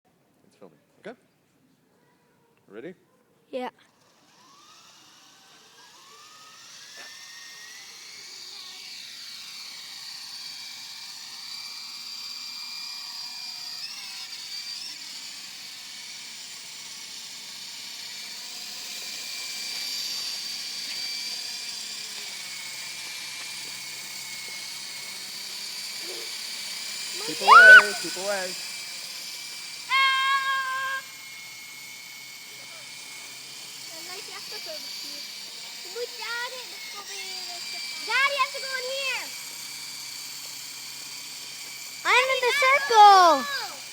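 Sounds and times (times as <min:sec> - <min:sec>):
rc helicopter rotor whine: 0:03.6 - 0:43.9.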